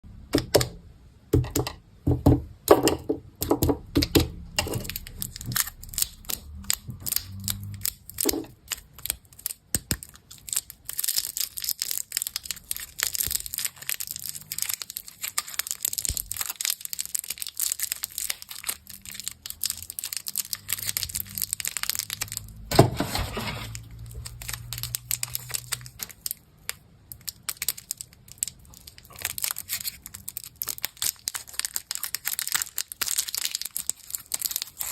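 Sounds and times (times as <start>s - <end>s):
plastic wrappers crinkling: 4.5s - 34.9s.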